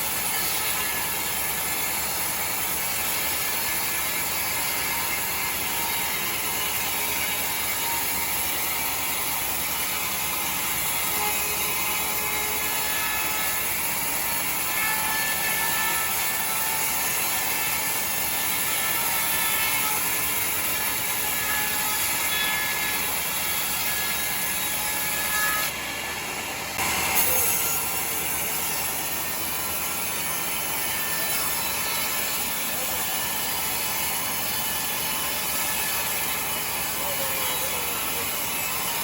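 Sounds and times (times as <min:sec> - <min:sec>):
sawmill saw cutting timber: 0:00.0 - 0:39.0.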